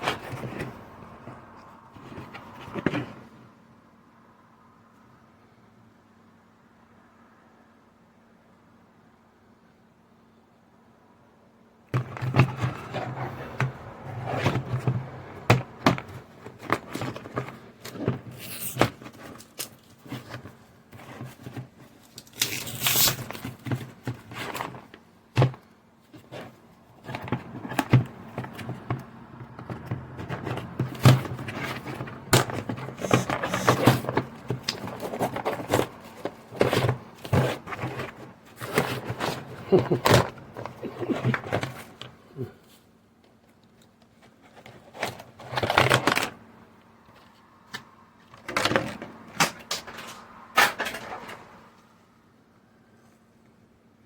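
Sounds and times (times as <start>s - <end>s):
objects knocking and scraping on desk: 0.0s - 3.4s, 11.9s - 19.4s, 26.2s - 42.2s.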